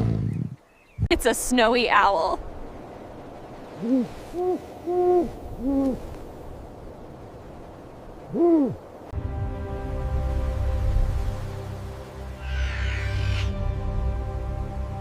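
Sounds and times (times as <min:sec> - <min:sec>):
owl hooting: 0:03.8 - 0:06.2, 0:08.3 - 0:08.8, 0:12.4 - 0:13.6
music: 0:09.2 - 0:15.0.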